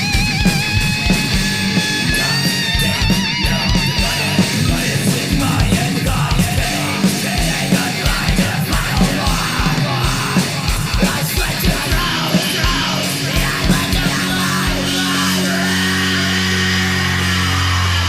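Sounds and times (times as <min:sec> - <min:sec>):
distorted electric guitars: 0:00.0 - 0:18.0
person yelling vocals: 0:12.0 - 0:18.0.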